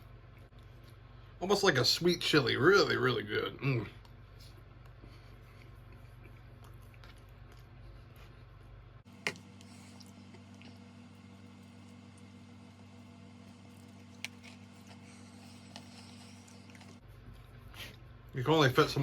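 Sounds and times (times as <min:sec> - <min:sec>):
steady low hum: 0:00.0 - 0:19.0
faint chewing: 0:03.8 - 0:18.4.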